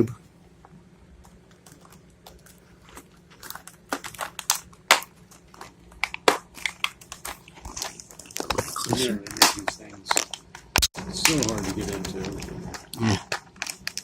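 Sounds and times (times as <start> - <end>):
plastic packaging crinkling: 1.3 - 14.0
plastic packaging snaps: 3.4 - 14.0.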